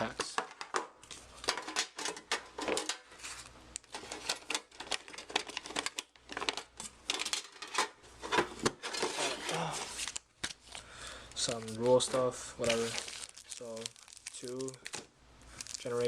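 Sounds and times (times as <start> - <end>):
cards and paper rustling: 0.0 - 16.0.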